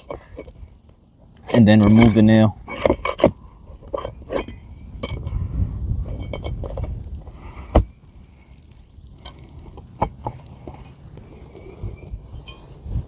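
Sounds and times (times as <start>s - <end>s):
metal tool clinking on nail: 1.8s - 2.3s.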